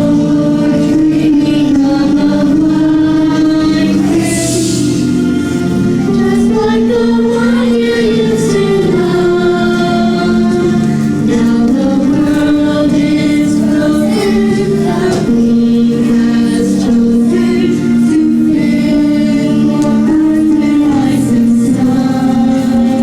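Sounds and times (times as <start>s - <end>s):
choir singing: 0.0s - 23.0s
musical accompaniment: 0.0s - 23.0s.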